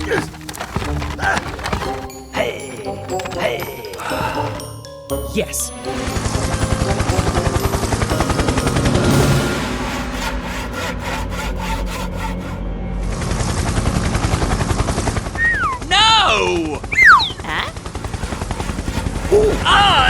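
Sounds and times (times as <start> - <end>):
cartoon background music: 0.0 - 12.6, 17.0 - 20.0
rapid mechanical rattling: 17.7 - 20.0.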